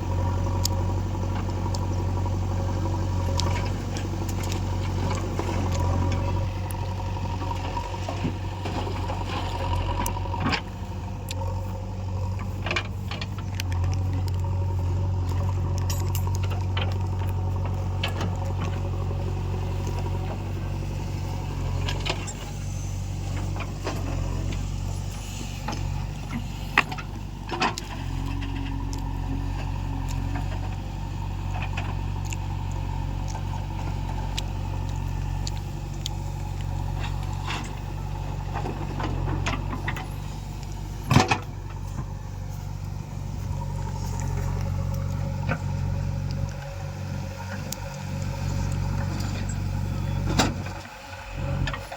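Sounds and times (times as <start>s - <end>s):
diesel engines droning: 0.0s - 51.9s
machinery clanks and knocks: 35.5s - 50.9s.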